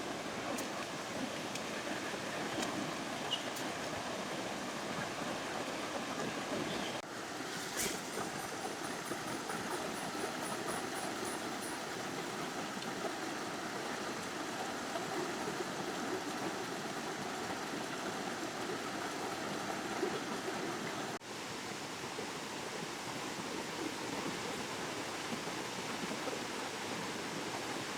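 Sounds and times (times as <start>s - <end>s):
faint high rapid ticking: 7.8s - 12.2s.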